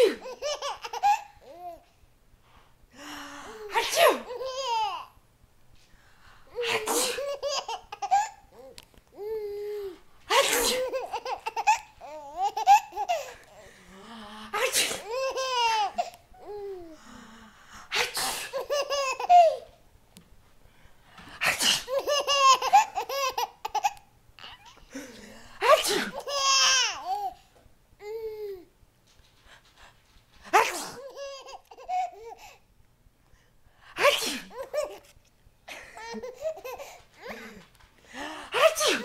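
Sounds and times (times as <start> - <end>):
person sneezing: 0.0 - 0.3, 3.7 - 4.3, 6.6 - 7.4, 10.3 - 11.0, 14.5 - 15.2, 17.9 - 18.6, 21.4 - 22.0, 24.9 - 26.2, 30.5 - 31.1, 34.0 - 34.8, 38.5 - 39.0
baby laughing: 0.0 - 1.8, 4.2 - 5.1, 6.6 - 9.4, 10.3 - 13.4, 15.0 - 16.8, 18.5 - 19.7, 21.8 - 24.8, 26.1 - 27.4, 31.0 - 32.4, 34.5 - 35.1, 35.8 - 37.6.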